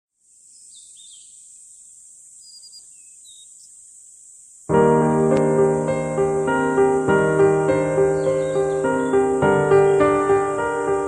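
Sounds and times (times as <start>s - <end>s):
faint high-pitched hiss: 0.1s - 11.0s
small chirps: 0.3s - 4.7s
piano music: 4.7s - 11.0s.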